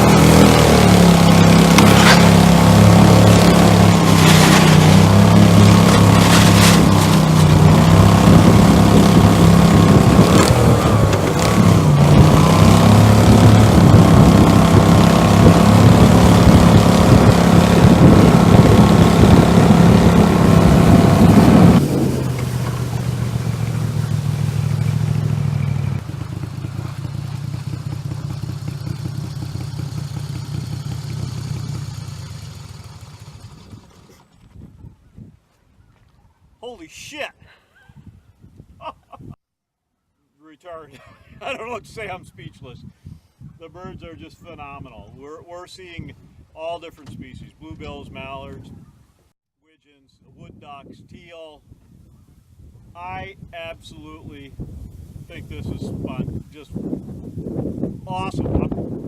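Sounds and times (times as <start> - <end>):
outboard motor running: 0.0 - 34.5.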